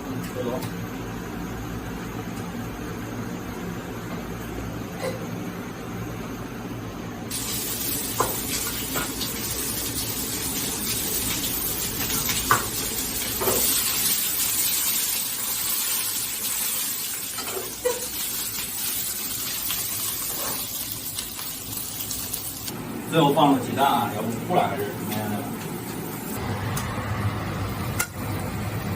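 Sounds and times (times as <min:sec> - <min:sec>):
food sizzling in a pan: 0:07.3 - 0:22.7.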